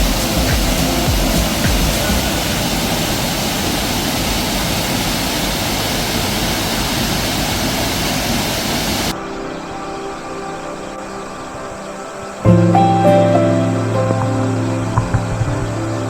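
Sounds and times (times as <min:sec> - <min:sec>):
falling water rushing: 0:00.0 - 0:09.2.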